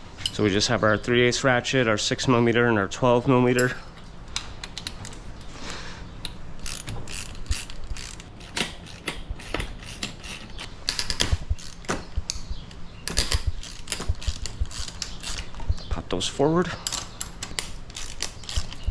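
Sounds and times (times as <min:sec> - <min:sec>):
hand ratchet clicking: 0:06.2 - 0:11.9, 0:13.1 - 0:15.7, 0:16.8 - 0:18.9.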